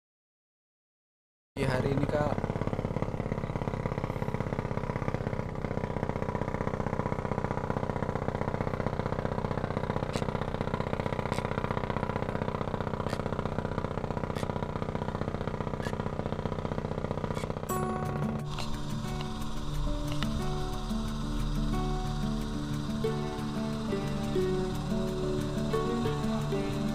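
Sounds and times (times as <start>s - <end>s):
small engine running: 1.6s - 26.9s.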